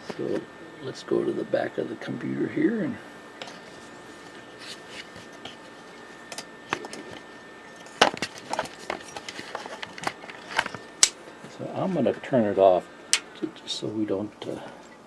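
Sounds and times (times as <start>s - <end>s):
faint steady hum: 0.0s - 15.0s
clicks and knocks of handling: 7.9s - 11.2s.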